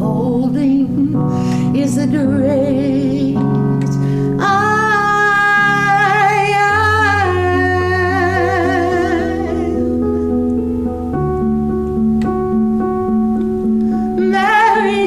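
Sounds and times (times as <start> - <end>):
person singing with vibrato: 0.0 - 10.0, 14.0 - 15.0
instrumental chords and bass: 0.0 - 15.0.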